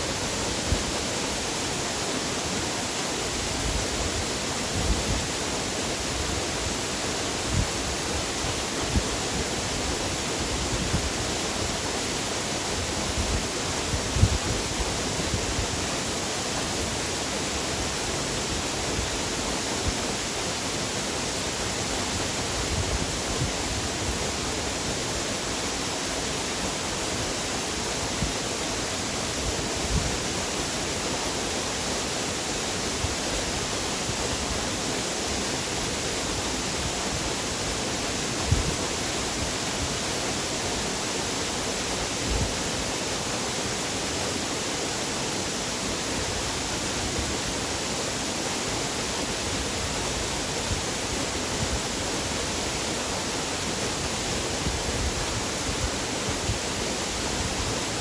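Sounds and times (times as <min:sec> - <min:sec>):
rush of falling water: 0:00.0 - 0:58.0.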